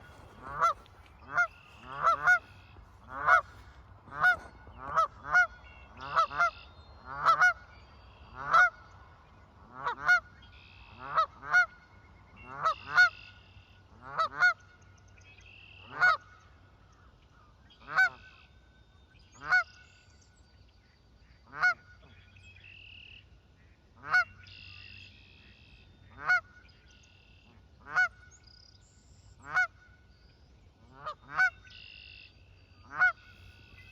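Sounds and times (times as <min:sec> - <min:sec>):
goose honking: 0:00.0 - 0:07.6, 0:08.4 - 0:08.8, 0:27.9 - 0:28.2, 0:29.4 - 0:29.7, 0:30.9 - 0:32.1, 0:32.9 - 0:33.9.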